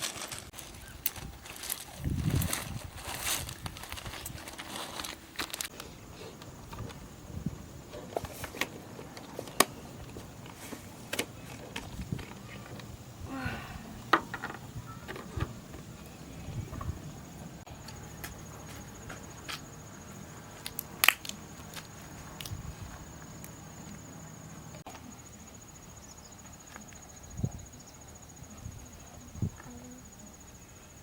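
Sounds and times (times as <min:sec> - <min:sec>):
high insect trill: 0:00.0 - 0:31.0.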